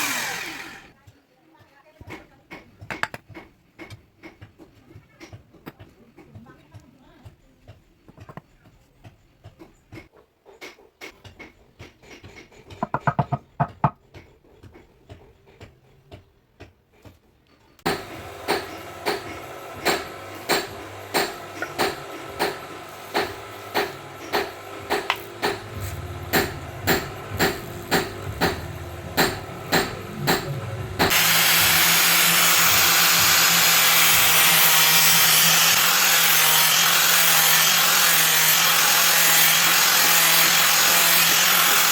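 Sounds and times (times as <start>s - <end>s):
power tool grinding: 0.0s - 1.0s, 12.7s - 14.0s, 17.9s - 41.9s.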